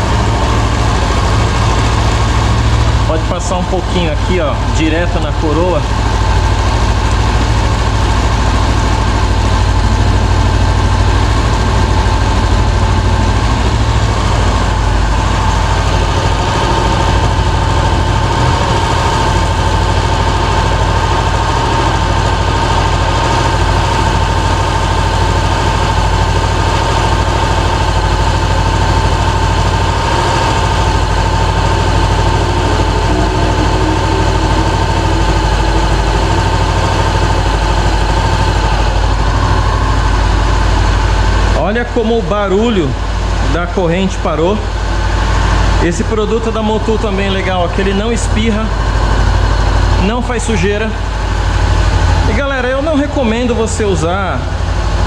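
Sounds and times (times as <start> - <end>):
steady tone: 0.0 - 41.2
motorcycle engine idling: 0.0 - 55.0
noisy drive chain turning: 0.0 - 55.0.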